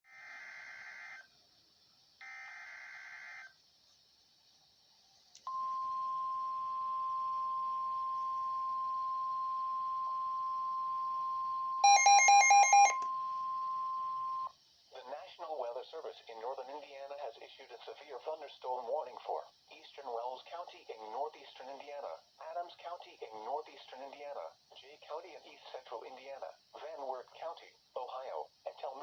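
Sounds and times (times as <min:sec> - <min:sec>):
steady warning alarm tone: 0:05.5 - 0:14.5
rapid beeps: 0:11.8 - 0:14.5.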